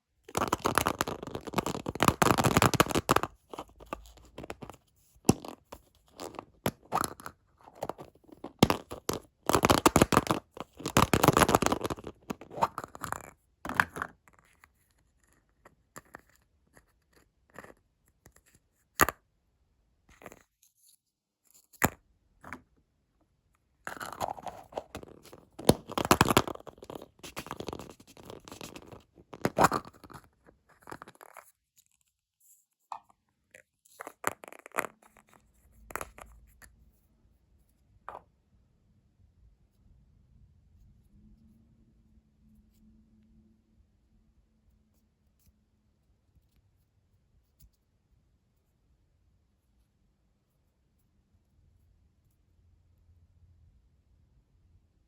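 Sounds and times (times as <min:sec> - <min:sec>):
candy wrappers crinkling: 0:00.3 - 0:04.7, 0:23.9 - 0:31.4.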